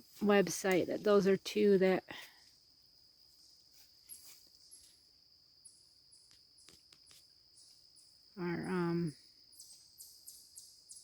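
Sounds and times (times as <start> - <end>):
cricket trill: 0.0 - 11.0
short high insect chirps: 3.3 - 11.0.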